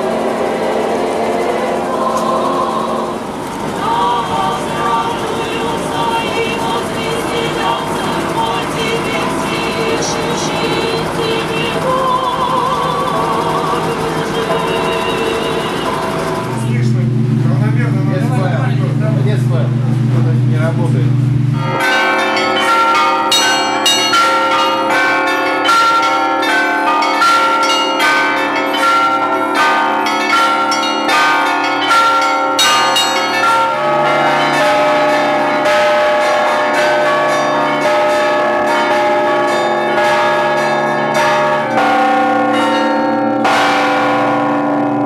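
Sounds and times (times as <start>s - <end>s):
church bells ringing: 0.0s - 45.0s
low bell: 11.8s - 45.0s.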